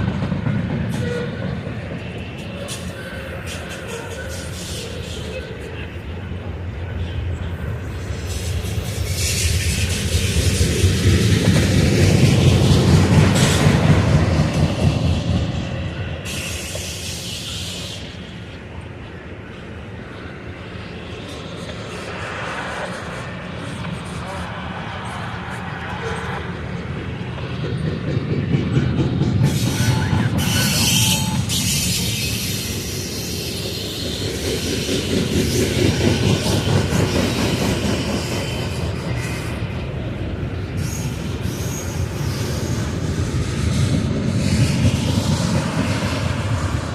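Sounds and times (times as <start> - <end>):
train wheels rumbling and clattering: 0.0 - 46.9
high wheel squeal: 2.5 - 5.8, 16.0 - 18.4, 29.4 - 39.8, 40.7 - 43.2
high hissing screech: 16.2 - 18.3, 29.4 - 35.8.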